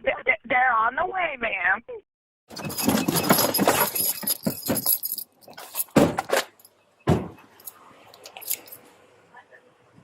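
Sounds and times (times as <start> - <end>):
keys and metal gear jangling: 2.5 - 6.7, 7.6 - 8.9
dull thumps: 5.9 - 6.5, 7.1 - 7.5.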